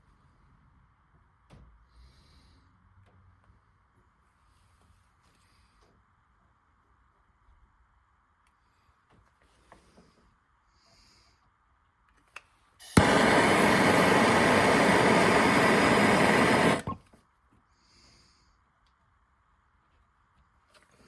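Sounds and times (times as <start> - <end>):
blowtorch flame hissing: 12.8 - 17.0
torch ignition click: 12.8 - 17.0.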